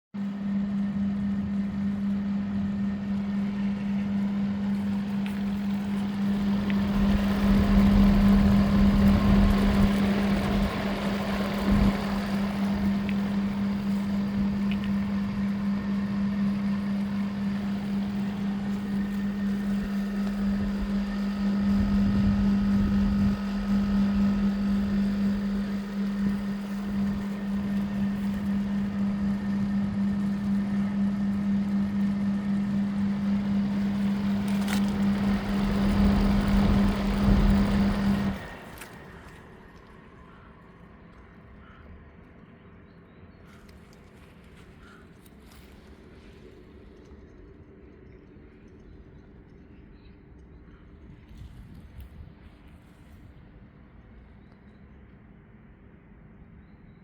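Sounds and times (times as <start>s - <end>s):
air conditioner humming: 0.2s - 40.0s.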